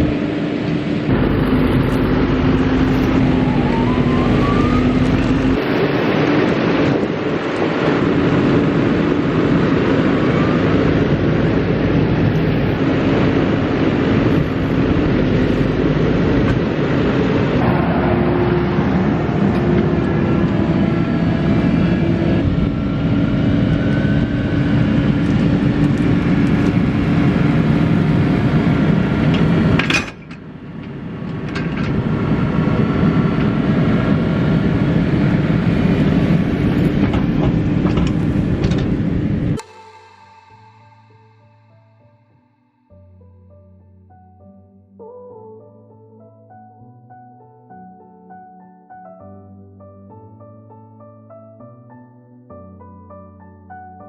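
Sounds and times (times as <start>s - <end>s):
farm machinery engines running: 0.0s - 39.6s.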